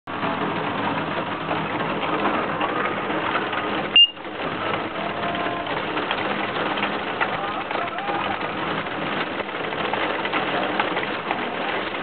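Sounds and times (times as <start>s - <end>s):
short high-pitched beep: 4.0s - 4.2s.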